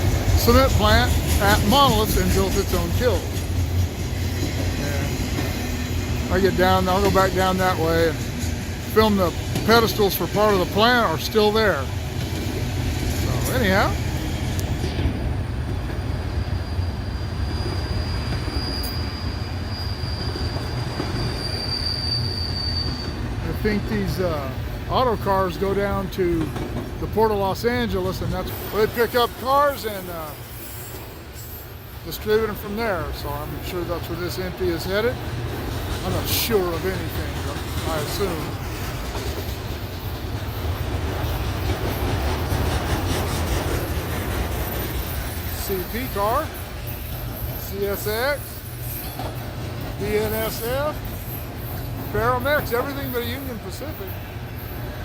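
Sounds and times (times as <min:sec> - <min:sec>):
steel wheels rumbling on rail: 0:00.0 - 0:55.0
high-pitched wheel squeal: 0:15.8 - 0:23.4.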